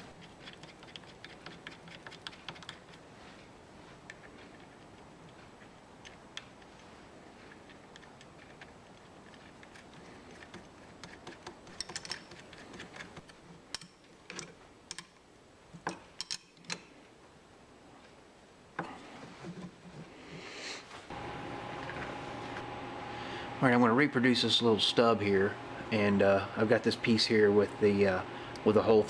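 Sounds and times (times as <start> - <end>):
faint steady hiss: 0.0 - 29.0
metal parts and tools clicking: 0.2 - 3.0, 7.5 - 15.2, 15.8 - 16.9.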